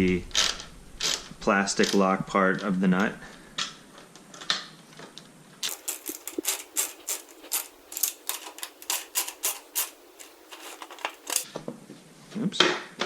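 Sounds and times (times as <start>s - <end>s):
socket ratchet clicking: 5.6s - 11.4s.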